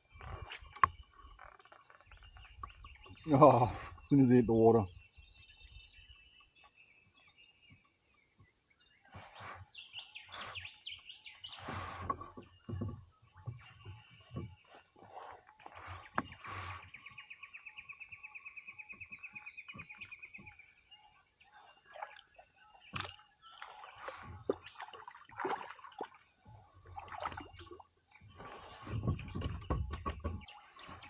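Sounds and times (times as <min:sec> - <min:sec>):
splashing: 0:22.9 - 0:29.3.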